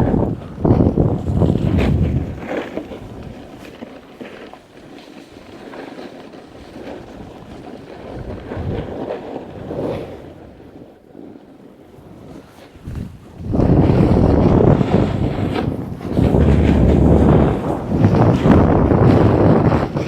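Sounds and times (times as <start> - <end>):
wind on microphone: 0.0 - 3.8, 7.0 - 10.4, 12.7 - 20.0
snowboard scraping over snow: 0.0 - 20.0.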